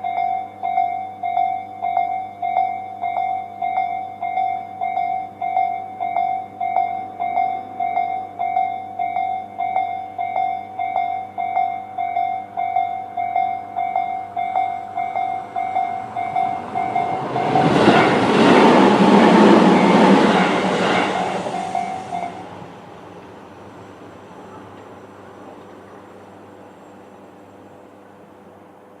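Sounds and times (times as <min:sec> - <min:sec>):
level crossing alarm bell: 0:00.0 - 0:18.6, 0:21.2 - 0:22.5
train rumbling over crossing: 0:00.0 - 0:29.0.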